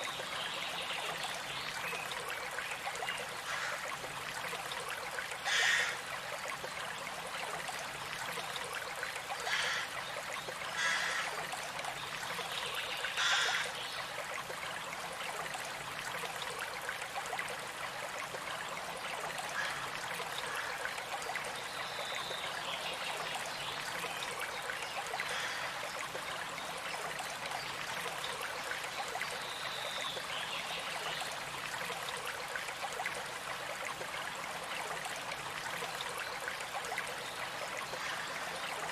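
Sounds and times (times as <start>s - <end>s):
stream water rushing: 0.0s - 38.9s.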